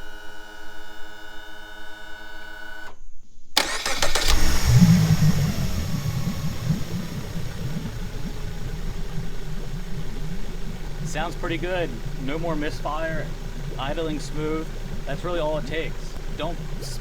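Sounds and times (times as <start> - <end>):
outboard motor starting and idling: 3.6 - 17.0.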